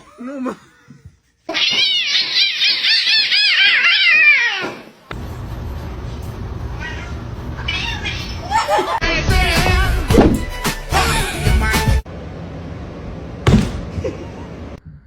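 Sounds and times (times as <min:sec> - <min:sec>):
cat yowling: 0:01.5 - 0:04.9, 0:06.8 - 0:08.5.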